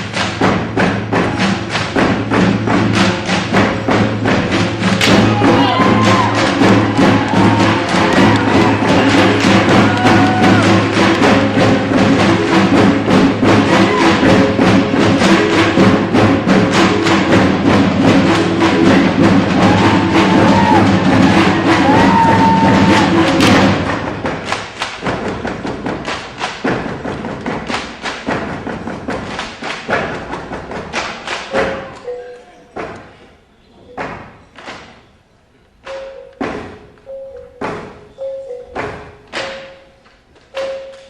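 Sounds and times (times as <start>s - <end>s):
fast percussive beat: 0.0s - 32.2s
scattered thumps and knocks: 0.0s - 32.2s, 35.8s - 40.0s.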